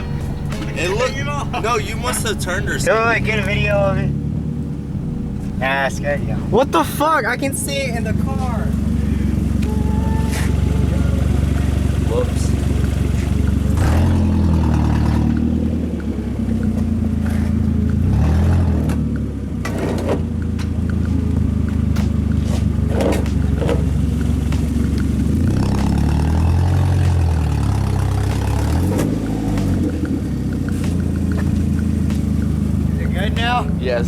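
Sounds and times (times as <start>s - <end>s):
car engine with loud exhaust revving: 0.0s - 34.0s.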